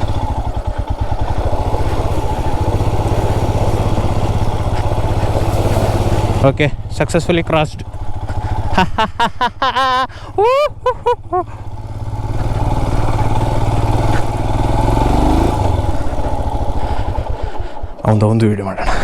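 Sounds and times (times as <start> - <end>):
motorcycle engine revving: 0.0 - 18.0
person calling out: 10.4 - 10.8.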